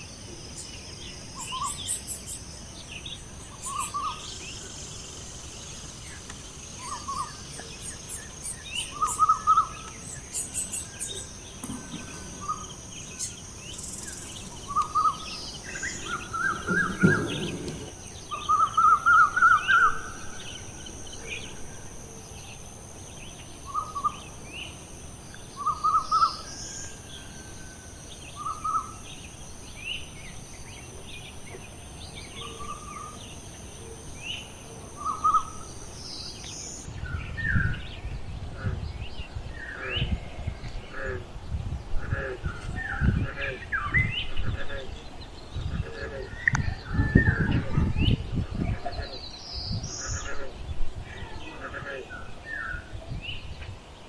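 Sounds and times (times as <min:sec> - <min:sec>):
birds chirping: 0:00.0 - 0:21.5, 0:30.8 - 0:54.0.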